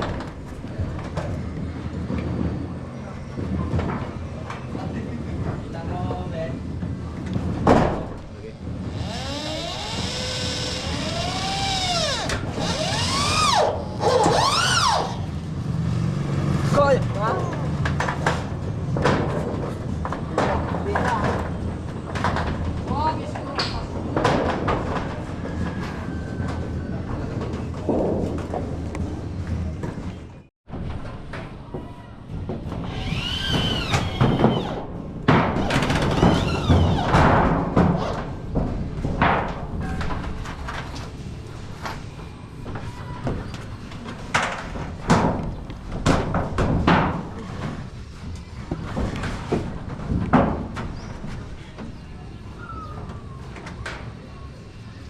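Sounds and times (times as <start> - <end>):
electric drill whining: 8.9 - 15.3.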